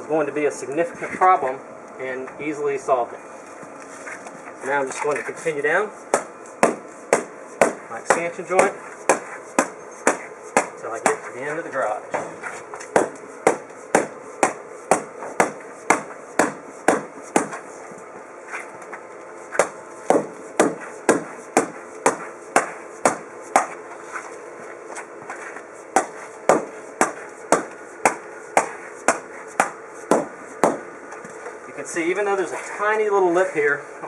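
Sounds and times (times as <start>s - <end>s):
hammer strikes: 6.1s - 11.3s, 12.1s - 17.6s, 19.5s - 23.8s, 25.3s - 30.8s.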